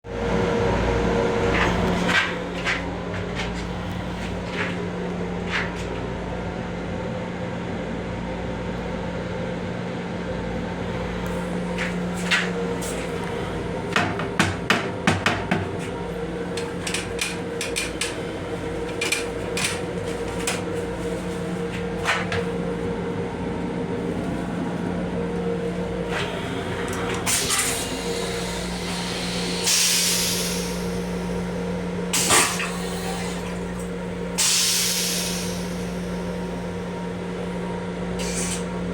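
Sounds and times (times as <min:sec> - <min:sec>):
electrical hum and rumble: 0:00.1 - 0:38.9
clicks and knocks from fittings: 0:16.6 - 0:18.2.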